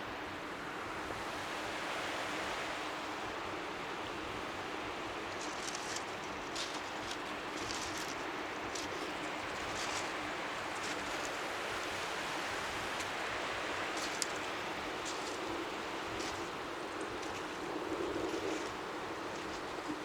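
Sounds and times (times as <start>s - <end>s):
small waves lapping: 4.5s - 20.0s.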